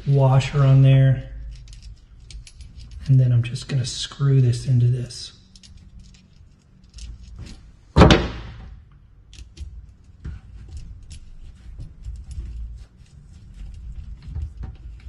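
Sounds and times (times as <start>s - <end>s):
loud knock: 8.0s - 8.7s.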